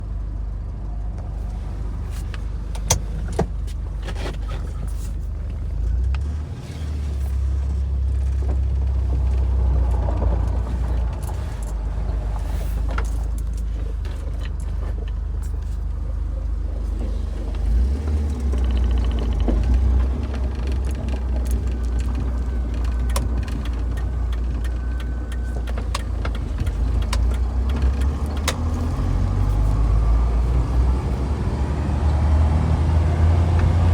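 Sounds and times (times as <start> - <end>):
car engine droning: 0.0 - 33.9
sharp engine ticks: 18.3 - 20.6, 22.8 - 28.8.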